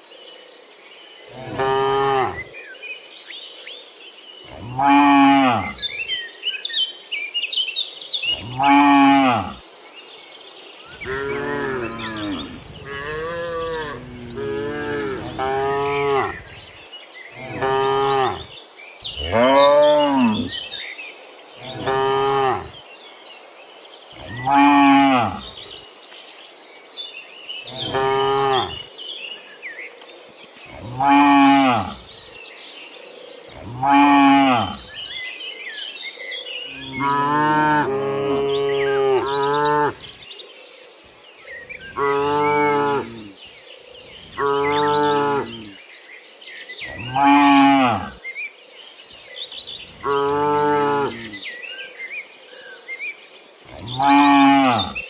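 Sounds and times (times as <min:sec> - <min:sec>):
cattle mooing: 0:11.0 - 0:16.6, 0:17.4 - 0:18.5, 0:27.7 - 0:28.8, 0:36.8 - 0:40.0.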